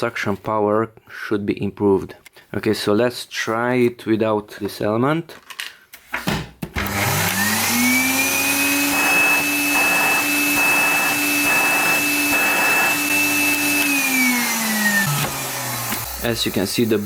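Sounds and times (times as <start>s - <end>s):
vacuum cleaner motor whining: 6.8s - 17.0s.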